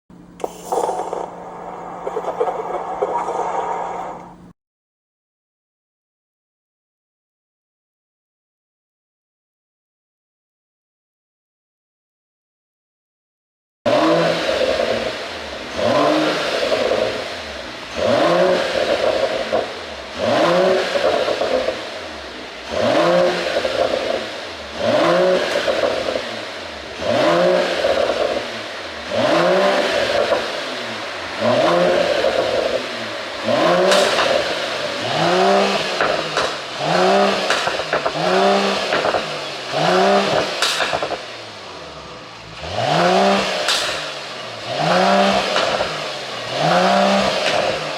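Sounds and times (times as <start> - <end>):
car engine revving: 13.9 - 47.9
exhaust crackling pops: 29.4 - 41.4, 42.4 - 47.9.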